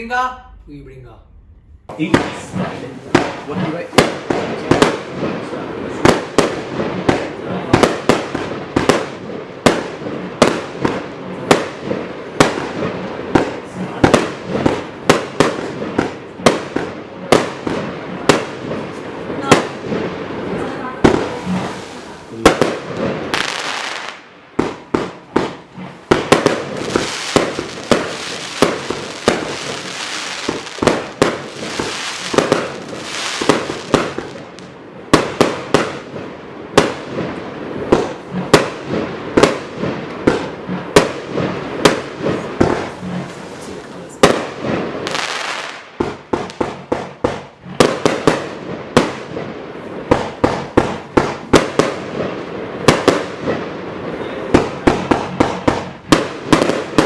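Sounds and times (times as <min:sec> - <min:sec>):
firework cake shots and bursts: 0:01.9 - 0:53.6, 0:54.5 - 0:57.0
firework hiss: 0:17.6 - 0:36.1, 0:36.7 - 0:57.0.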